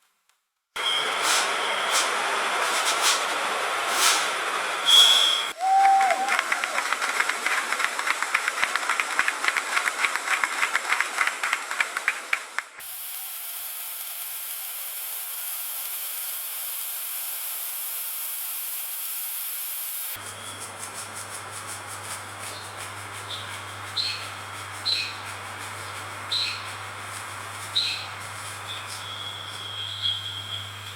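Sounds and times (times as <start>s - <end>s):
steady hiss: 0.8s - 5.6s, 12.8s - 30.9s.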